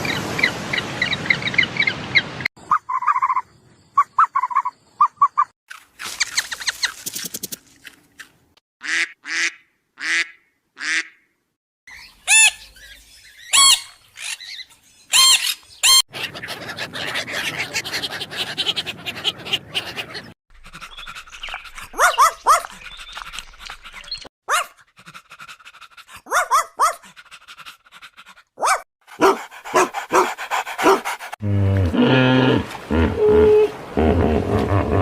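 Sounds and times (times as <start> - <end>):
dog barking: 21.9 - 22.7, 24.5 - 24.8, 26.2 - 27.1, 28.6 - 31.0.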